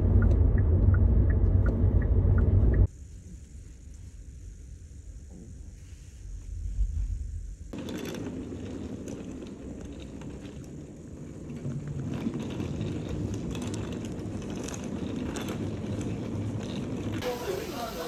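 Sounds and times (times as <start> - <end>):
car road noise: 0.0 - 2.9.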